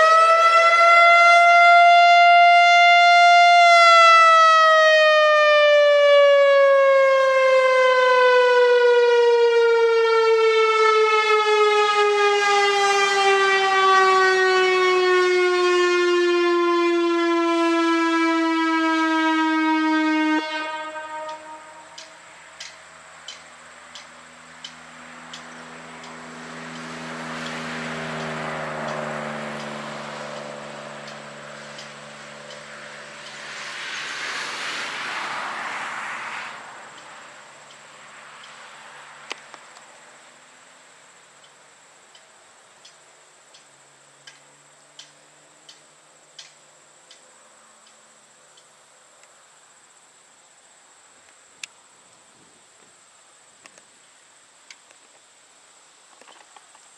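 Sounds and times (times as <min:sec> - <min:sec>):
electronic warning siren winding down: 0:00.0 - 0:22.3
vehicles passing: 0:00.0 - 0:56.9
steady high drone: 0:18.6 - 0:22.5
faint regular ticking: 0:22.0 - 0:27.6, 0:30.4 - 0:33.4.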